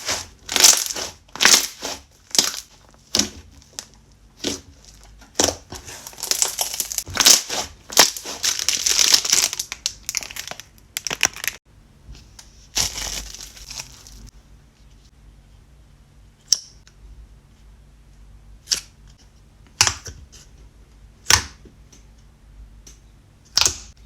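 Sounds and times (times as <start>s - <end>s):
hands crinkling material: 0.0s - 11.6s, 12.7s - 14.3s.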